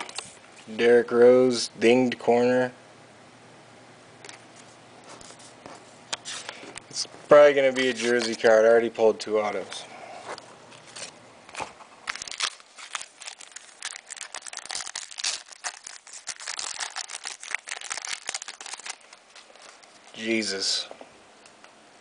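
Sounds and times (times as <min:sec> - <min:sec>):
wrapper crinkling and tearing: 0:10.7 - 0:20.3.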